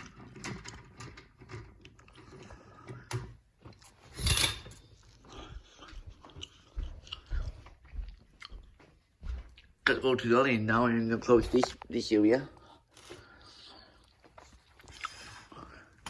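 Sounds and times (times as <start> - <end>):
window blinds clicking and rattling: 0.0 - 2.9.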